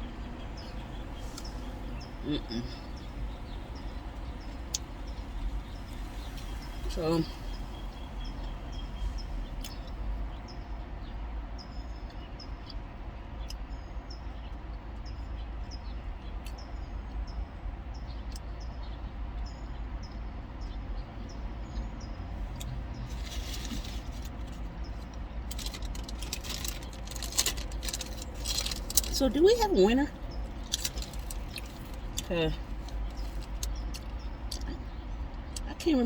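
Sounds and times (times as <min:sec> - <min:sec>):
steady low rumble: 0:00.0 - 0:11.9, 0:22.3 - 0:36.0
small bird chirping: 0:00.0 - 0:36.0
rustling: 0:23.0 - 0:29.8, 0:30.4 - 0:34.2.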